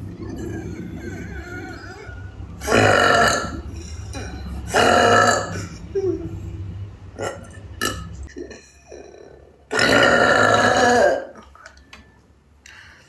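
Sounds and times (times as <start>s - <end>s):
person burping: 2.6s - 5.8s, 7.2s - 11.5s.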